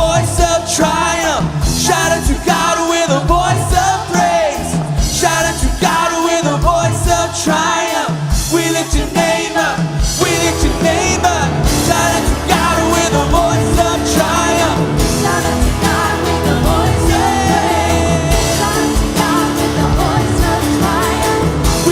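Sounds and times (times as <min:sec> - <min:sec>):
group of people singing: 0:00.0 - 0:21.9
live rock band playing: 0:00.0 - 0:21.9
steady kick drum beat: 0:06.6 - 0:21.9.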